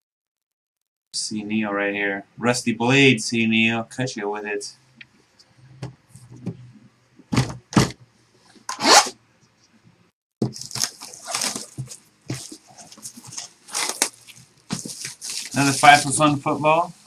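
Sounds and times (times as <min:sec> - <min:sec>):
wrapping snapping: 0:10.4 - 0:16.2
wrapping ripping: 0:10.4 - 0:16.4
wrapping crinkling and tearing: 0:10.4 - 0:16.6.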